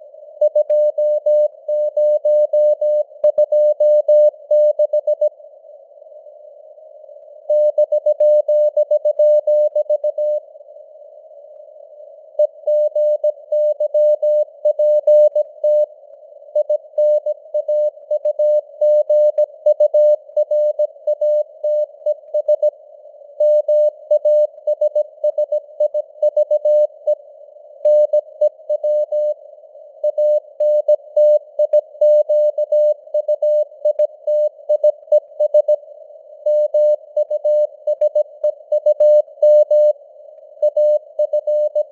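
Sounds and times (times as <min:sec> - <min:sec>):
morse code beeps: 0:00.4 - 0:05.3, 0:40.6 - 0:41.9.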